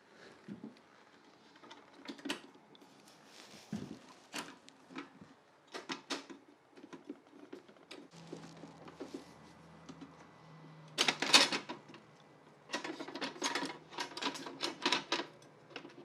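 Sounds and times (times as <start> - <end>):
clicks and knocks of parts handled: 4.3 - 8.2, 10.9 - 16.0
low steady hum: 8.1 - 15.9.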